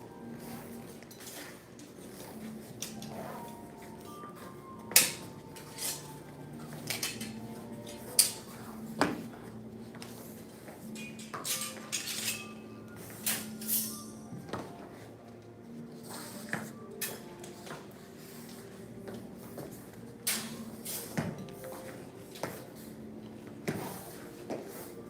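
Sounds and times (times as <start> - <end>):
metal clinks and clacks: 10.8 - 14.3.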